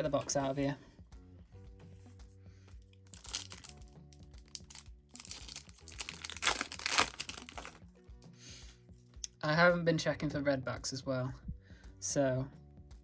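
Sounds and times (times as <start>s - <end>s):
background music: 0.0s - 13.0s
foil wrapper crinkling and tearing: 3.1s - 7.8s.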